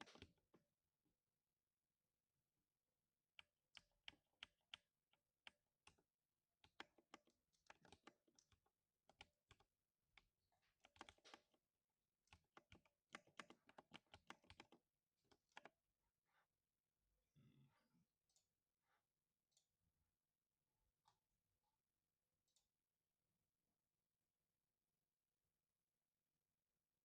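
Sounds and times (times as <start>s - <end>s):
mechanical keyboard typing: 6.6s - 11.6s, 12.3s - 15.8s.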